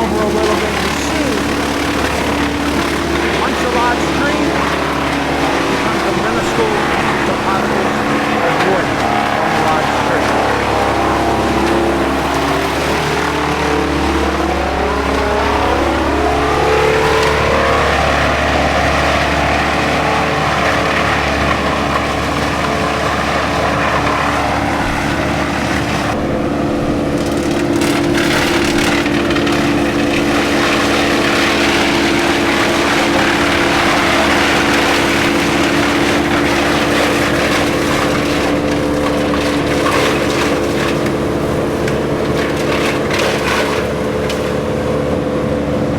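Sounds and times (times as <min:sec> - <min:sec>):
wood chipper engine revving: 0:00.0 - 0:45.9.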